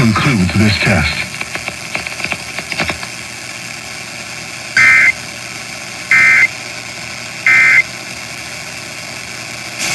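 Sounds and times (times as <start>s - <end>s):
radio hiss: 0.0s - 3.2s, 4.7s - 9.9s
buzzy digital screeches: 4.8s - 5.2s, 6.1s - 6.5s, 7.5s - 7.8s.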